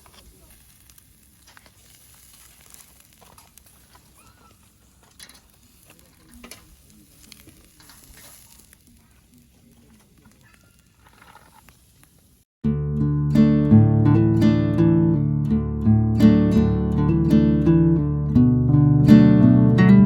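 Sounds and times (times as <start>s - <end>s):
fire crackling: 0.0s - 12.5s
meat sizzling on grill: 0.0s - 12.5s.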